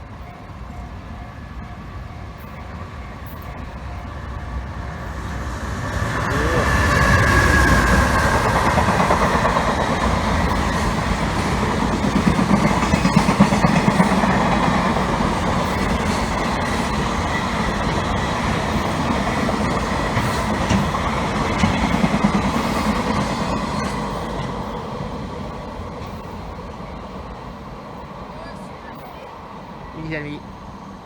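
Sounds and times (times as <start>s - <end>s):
freight train passing: 0.0s - 31.0s
rumble of wagons: 1.7s - 31.0s
wheels clattering over rail joints: 5.8s - 27.4s.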